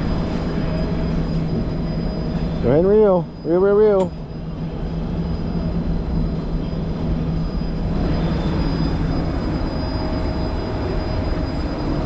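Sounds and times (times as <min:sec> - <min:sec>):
wind: 0:00.0 - 0:12.0.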